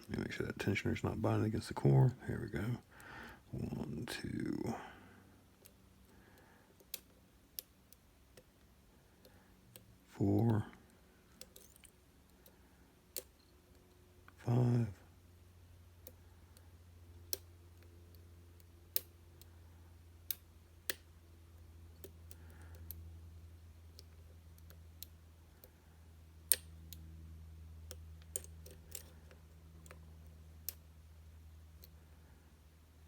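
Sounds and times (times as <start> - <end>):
low steady hum: 0.0 - 33.0
lock pick clicking: 13.1 - 13.5, 27.9 - 29.2.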